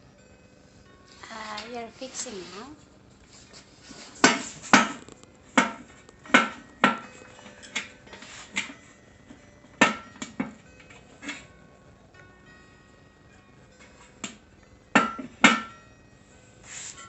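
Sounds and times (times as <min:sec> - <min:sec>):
metal grill parts clanking: 0:03.4 - 0:11.5, 0:13.8 - 0:15.8.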